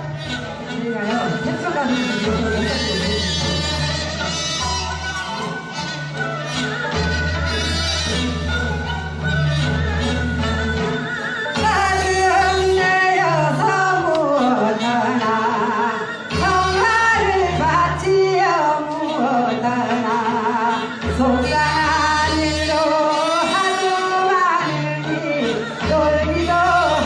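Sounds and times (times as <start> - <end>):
instrumental backing with bass: 0.0 - 27.0
person singing with vibrato: 11.3 - 27.0.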